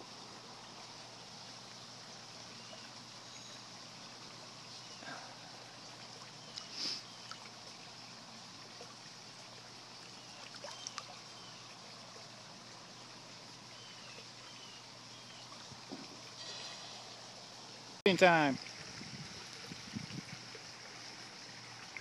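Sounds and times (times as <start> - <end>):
pond water trickling: 0.0 - 22.0
small splashes: 5.0 - 11.6.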